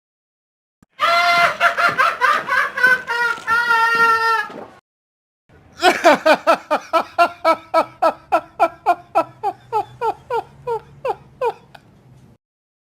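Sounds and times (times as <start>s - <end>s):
maniacal laughter: 0.9s - 4.6s, 5.8s - 11.8s.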